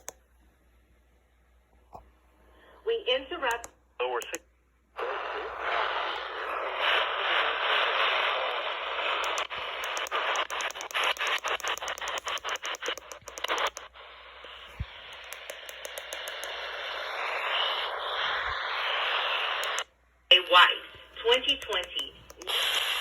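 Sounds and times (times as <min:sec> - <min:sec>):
radio clicks and crackles: 0:00.0 - 0:00.2, 0:03.4 - 0:19.9, 0:20.9 - 0:23.0
radio static hiss: 0:05.0 - 0:23.0.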